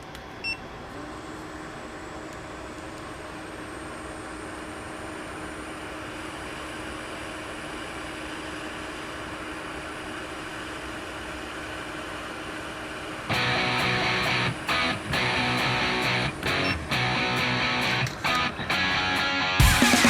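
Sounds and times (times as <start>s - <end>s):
fan-like hiss and drone: 1.2s - 20.0s
guitar music: 13.3s - 20.0s.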